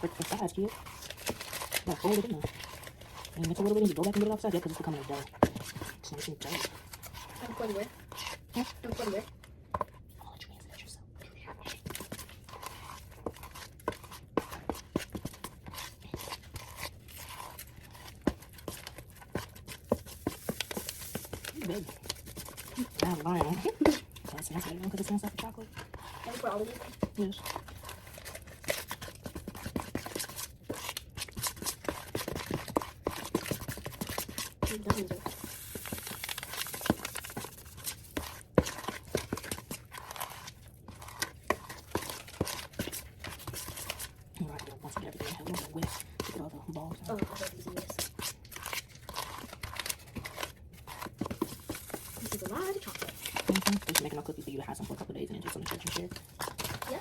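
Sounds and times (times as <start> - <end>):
spoon scraping a mixing bowl: 0.0 - 10.1, 11.5 - 57.0.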